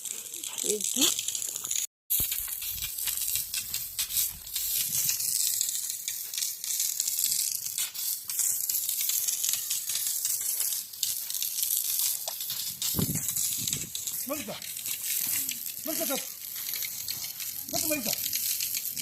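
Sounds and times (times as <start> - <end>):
dough deep-frying in oil: 0.0 - 19.0.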